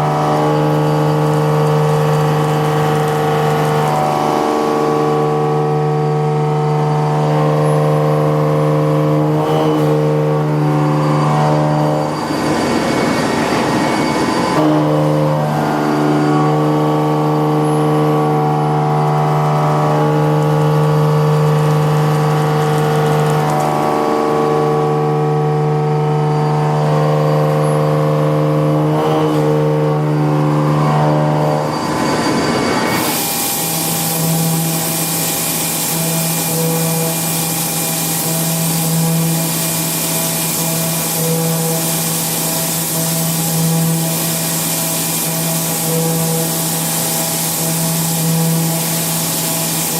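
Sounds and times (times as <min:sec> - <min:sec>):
milling cutter cutting metal: 0:00.0 - 0:49.9
loud hiss: 0:33.0 - 0:49.9.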